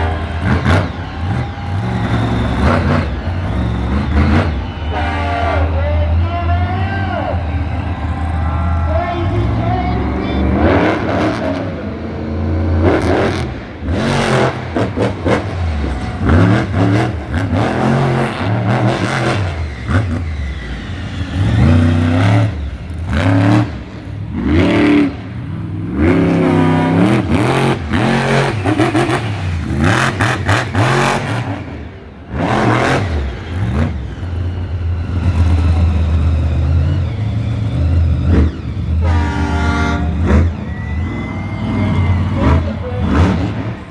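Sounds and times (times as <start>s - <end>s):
monster truck engine revving: 0.0s - 43.9s.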